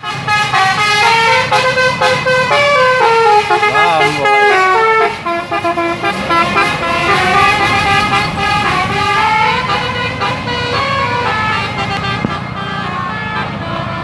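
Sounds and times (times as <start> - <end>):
musical bus air horn: 0.0 - 14.0.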